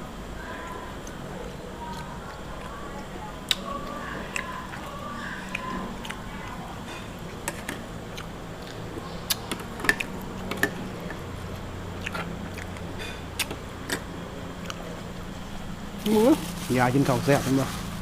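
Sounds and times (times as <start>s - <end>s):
steady low hum: 0.0s - 18.0s
person chewing: 1.0s - 15.1s.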